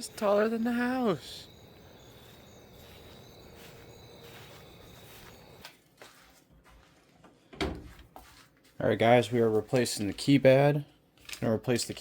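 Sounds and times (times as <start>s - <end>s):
insects chirping: 0.0s - 5.7s.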